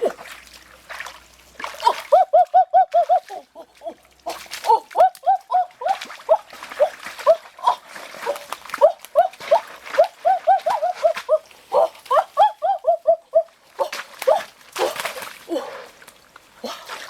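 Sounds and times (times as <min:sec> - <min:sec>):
dog yelping: 0:08.2 - 0:14.5.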